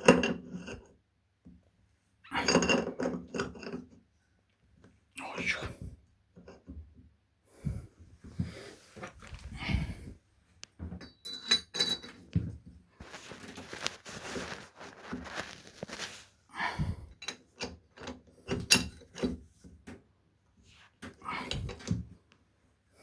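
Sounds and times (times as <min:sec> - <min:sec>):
metal tools clinking and knocking: 0:11.0 - 0:12.3, 0:17.2 - 0:19.3
rustling: 0:12.4 - 0:16.5.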